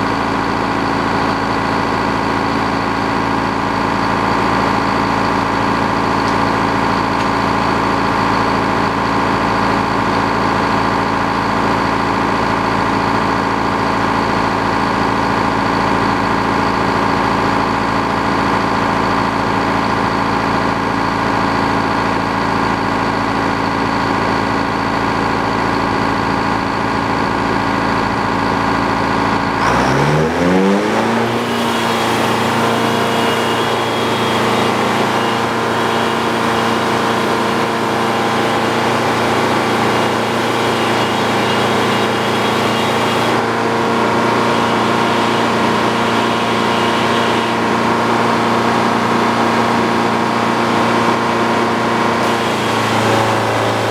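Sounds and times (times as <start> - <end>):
sawmill engine running: 0.0 - 53.9
thin high whine: 30.8 - 53.9.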